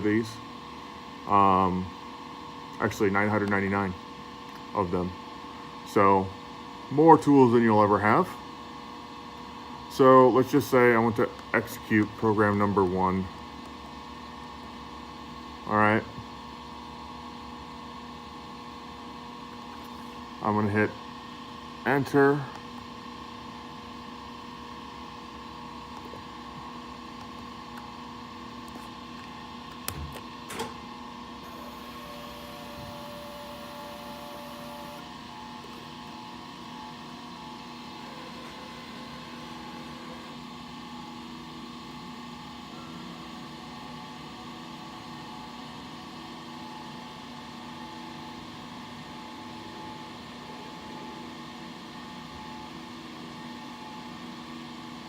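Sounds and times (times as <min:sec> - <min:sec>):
faint tone switching on and off: 0:31.4 - 0:36.4
machine motors humming: 0:31.4 - 0:41.1.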